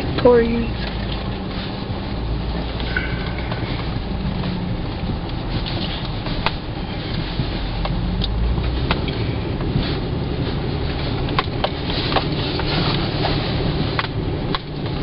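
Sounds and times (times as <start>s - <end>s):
car engine and tyres rumbling: 0.0s - 15.0s
sharp clicks and knocks: 10.8s - 15.0s.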